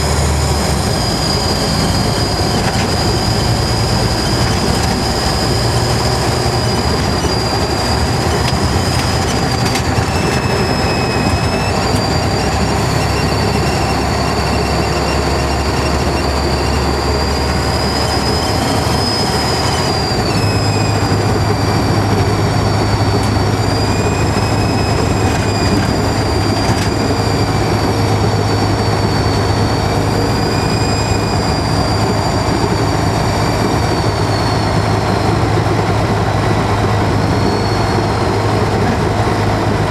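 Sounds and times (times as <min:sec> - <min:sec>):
diesel engine drone: 0:00.0 - 0:39.9
turbocharger whistling: 0:00.0 - 0:39.9.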